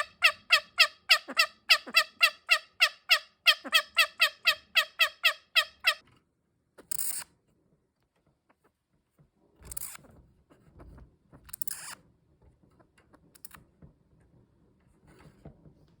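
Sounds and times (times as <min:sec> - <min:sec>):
rustling scraping noises: 0:14.8 - 0:16.0.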